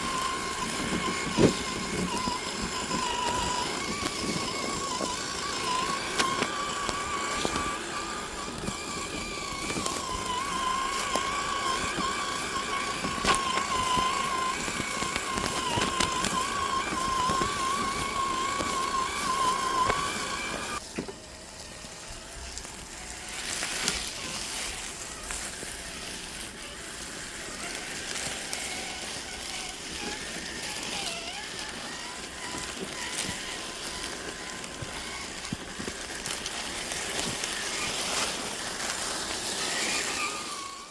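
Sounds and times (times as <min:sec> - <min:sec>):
electric motor and gears whining: 0:00.0 - 0:40.9.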